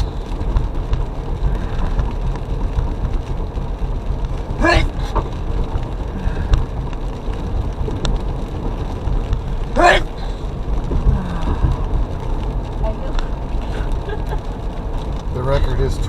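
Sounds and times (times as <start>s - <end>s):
car engine and tyre rumble: 0.0s - 16.0s
man sneezing: 4.6s - 5.0s, 9.8s - 10.2s.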